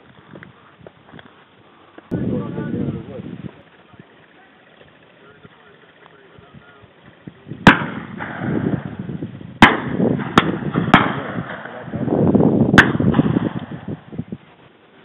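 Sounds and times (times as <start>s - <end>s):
rough steady noise: 0.0s - 15.0s
shotgun shots: 7.6s - 9.0s, 9.6s - 12.1s, 12.8s - 14.0s.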